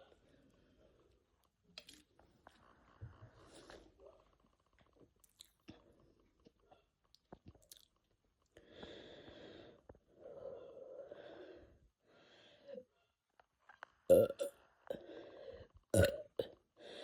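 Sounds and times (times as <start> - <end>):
mouth clicks and smacks: 7.1 - 8.0
person breathing: 8.6 - 12.8.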